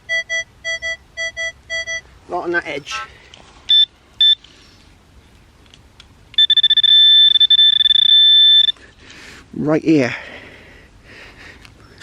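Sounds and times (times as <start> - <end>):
metal detector beeps: 0.1 - 2.0, 3.7 - 4.4, 6.4 - 8.8
metal detector warbling tone: 6.4 - 8.7.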